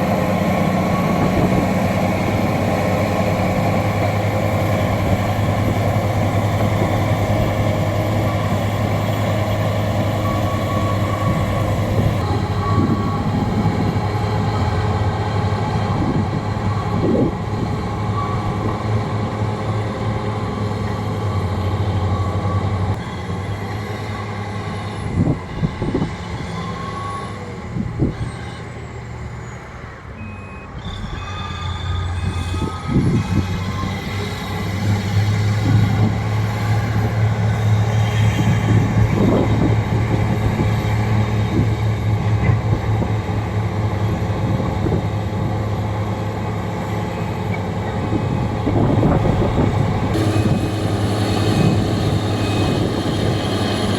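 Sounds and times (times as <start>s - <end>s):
bulldozer diesel engine running: 0.0s - 53.9s
reversing alarm beeping: 4.6s - 19.3s, 30.2s - 34.4s, 50.1s - 53.9s.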